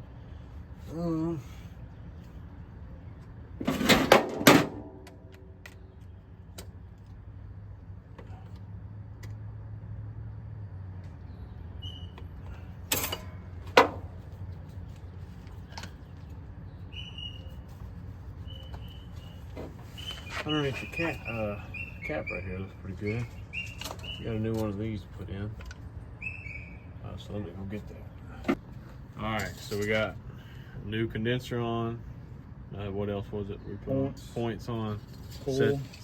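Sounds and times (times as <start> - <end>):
bird chirps: 11.2 - 12.7, 16.6 - 24.4, 26.2 - 27.1.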